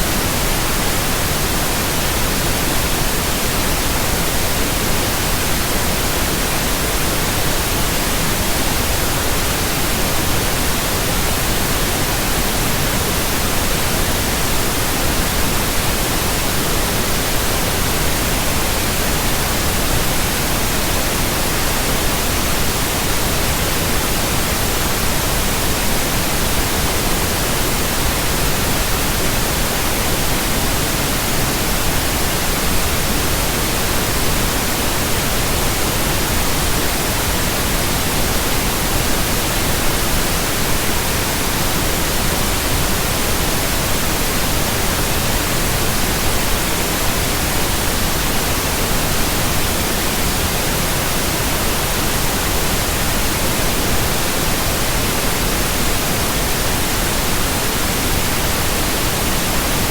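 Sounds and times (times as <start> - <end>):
pink noise hiss: 0.0 - 59.9.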